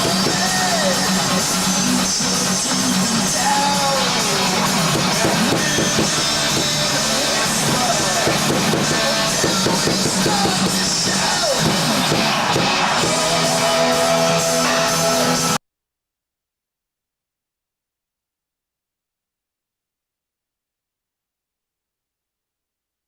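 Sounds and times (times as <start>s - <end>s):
loud rock music with drums: 0.0s - 15.6s.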